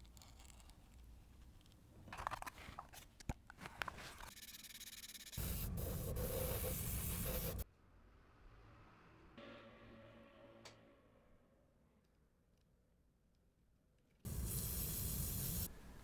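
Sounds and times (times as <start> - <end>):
loud steady hiss: 14.3 - 16.0.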